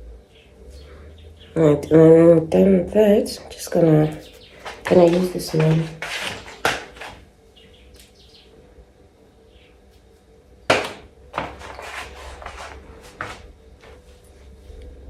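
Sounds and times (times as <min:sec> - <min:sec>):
faint bird chirps: 0:07.5 - 0:08.6
objects knocking and clicking: 0:10.7 - 0:11.6.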